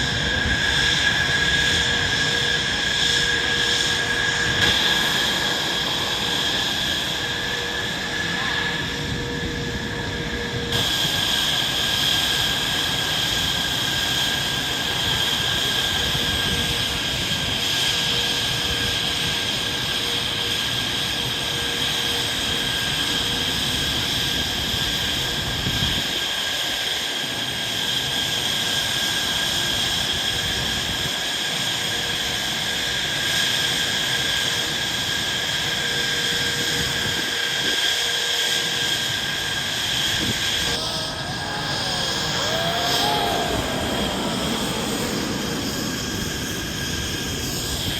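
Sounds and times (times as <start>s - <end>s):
jet engine roaring with high whine: 0.0s - 47.9s.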